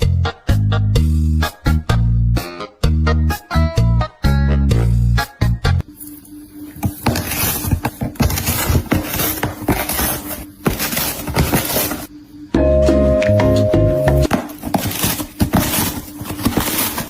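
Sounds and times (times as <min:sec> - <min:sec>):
rustling: 0:06.8 - 0:12.1, 0:14.3 - 0:17.0.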